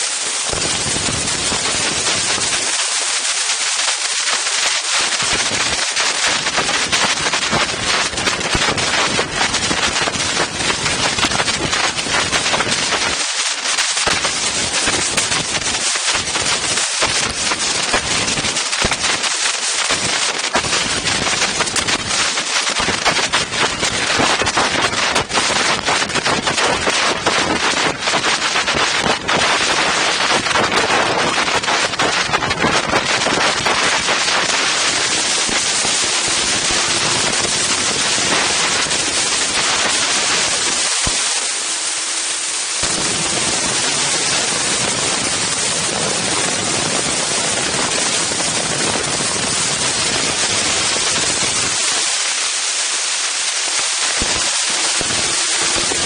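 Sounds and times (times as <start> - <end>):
wind buffeting microphone: 19.9 - 41.4, 42.8 - 51.9.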